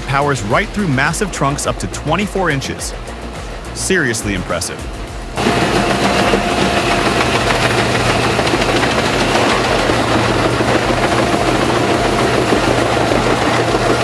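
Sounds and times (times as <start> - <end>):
wood being shredded: 5.4 - 14.0
wood chipper engine drone: 5.4 - 14.0.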